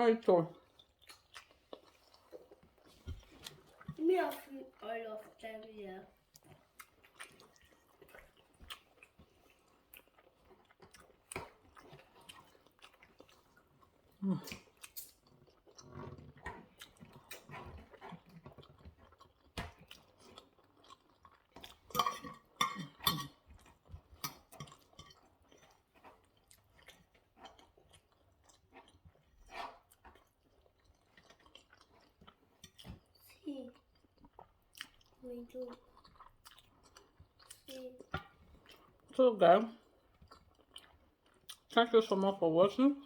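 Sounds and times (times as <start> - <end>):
person chewing food: 0.5 - 41.8.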